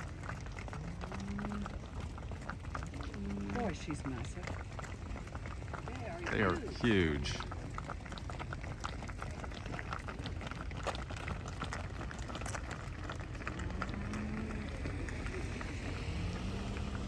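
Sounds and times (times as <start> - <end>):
cattle hooves clicking and scuffing: 0.0 - 17.0
low rumble: 11.6 - 17.0.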